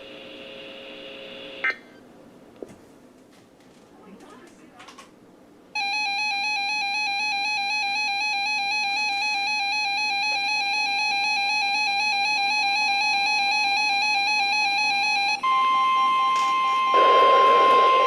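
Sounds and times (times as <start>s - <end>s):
two-tone electronic alarm tone: 5.8s - 18.0s.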